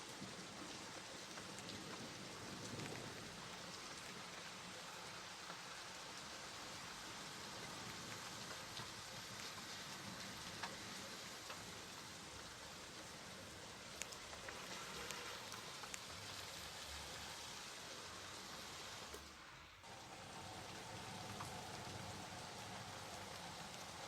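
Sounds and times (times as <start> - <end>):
steady rain falling: 0.0 - 24.0
raindrops ticking sharply: 6.8 - 17.8, 19.0 - 24.0.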